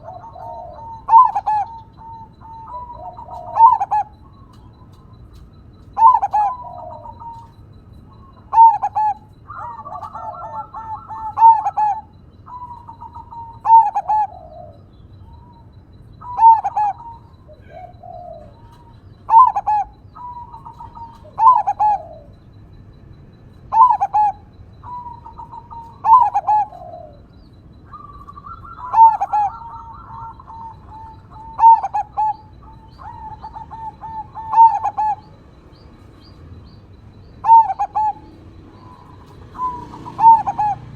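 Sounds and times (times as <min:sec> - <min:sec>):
dove cooing: 0:00.0 - 0:40.9
soft rolling trills: 0:00.0 - 0:40.9.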